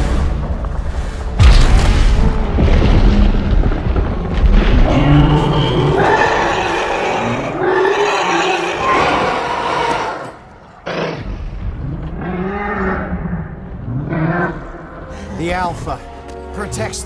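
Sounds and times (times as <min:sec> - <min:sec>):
dragon roaring and growling: 0:04.7 - 0:14.7.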